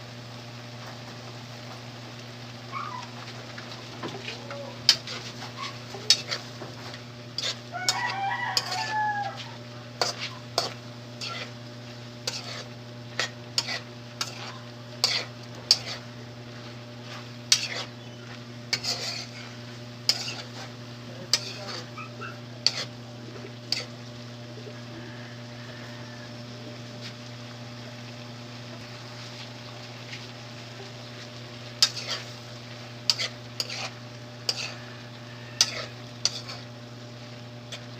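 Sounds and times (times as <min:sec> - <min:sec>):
rooster crowing: 0:07.7 - 0:09.8, 0:24.6 - 0:26.7, 0:34.6 - 0:36.1
steady low hum: 0:08.6 - 0:25.6.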